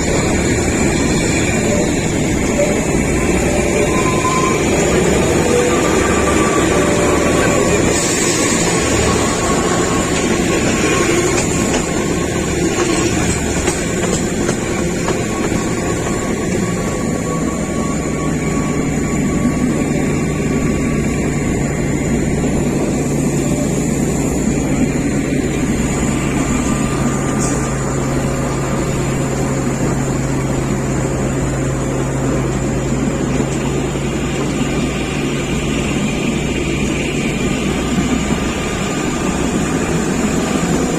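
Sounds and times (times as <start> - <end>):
train rumbling: 0.0 - 40.9.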